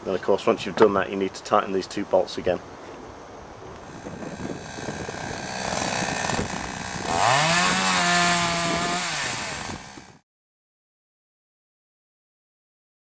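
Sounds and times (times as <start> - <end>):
chainsaw revving: 3.8 - 10.2.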